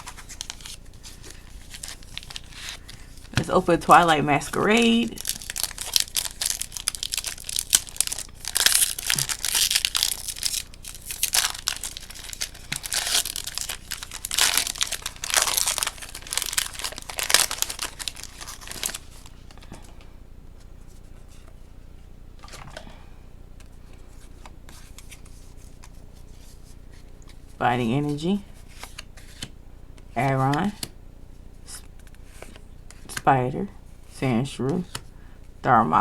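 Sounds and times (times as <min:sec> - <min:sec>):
foil wrapper tearing and crinkling: 0:00.0 - 0:03.4, 0:04.7 - 0:19.3.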